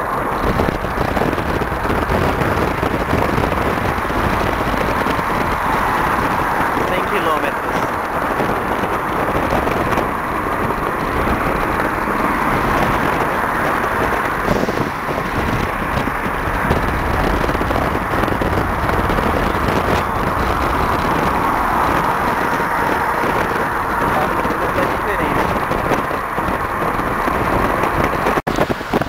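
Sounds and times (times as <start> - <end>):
car engines and road noise: 0.0 - 29.0.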